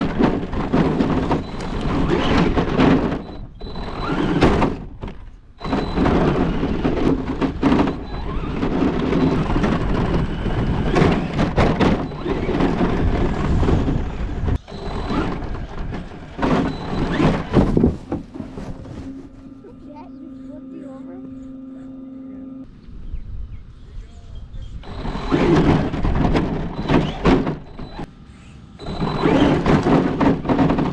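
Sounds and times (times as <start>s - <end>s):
toy car motors and tyres rushing: 0.0s - 21.9s, 24.6s - 30.9s
thuds of impacts: 4.4s - 19.7s, 28.8s - 30.9s.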